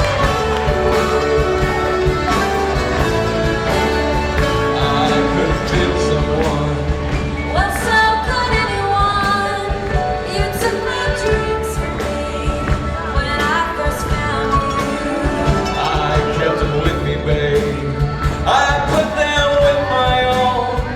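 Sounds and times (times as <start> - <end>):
person singing: 0.0 - 20.9
rock band playing live: 0.0 - 20.9.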